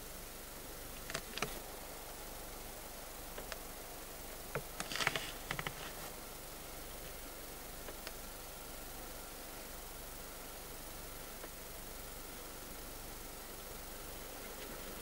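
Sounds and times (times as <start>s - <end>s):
background hiss: 0.0s - 15.0s
short clicks and rustles: 4.8s - 6.1s.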